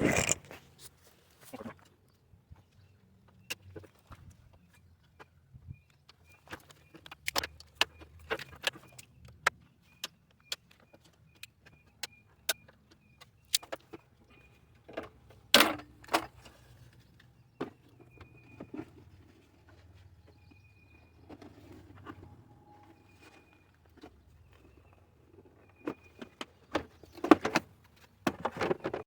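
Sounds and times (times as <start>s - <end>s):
clicks and knocks of tools: 6.0s - 14.0s.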